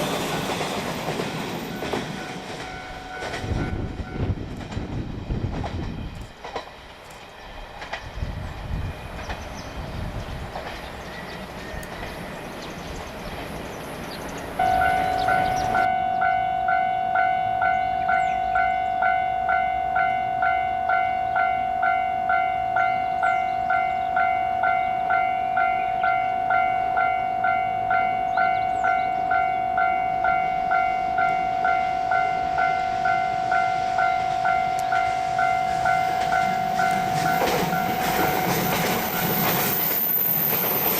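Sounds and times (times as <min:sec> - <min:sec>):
train running: 0:00.0 - 0:40.9
level crossing warning bell: 0:01.4 - 0:04.4, 0:14.6 - 0:40.3.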